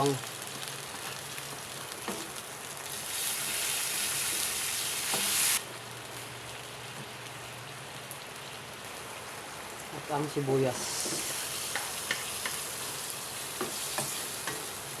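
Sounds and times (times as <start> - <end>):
garlic sizzling in oil: 0.0 - 15.0.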